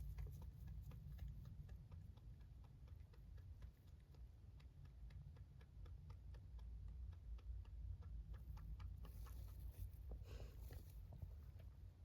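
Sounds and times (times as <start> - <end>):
rabbit chewing hay: 0.0 - 12.0.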